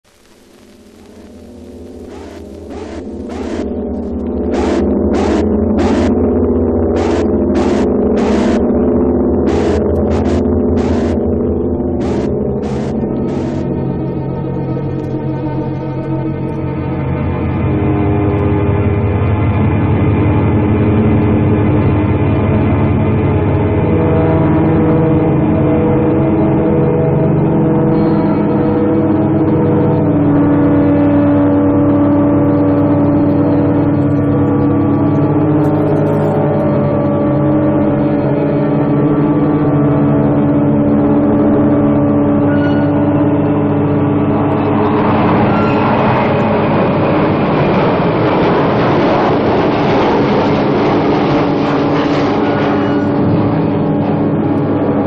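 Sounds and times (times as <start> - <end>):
droning chords: 0.6 - 55.0
rushing noise: 0.8 - 8.8, 9.4 - 14.1.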